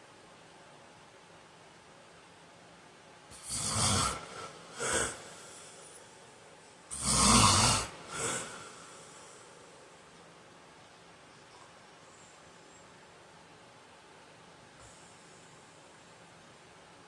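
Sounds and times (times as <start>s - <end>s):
man snoring loudly: 3.3s - 5.8s, 6.9s - 9.4s.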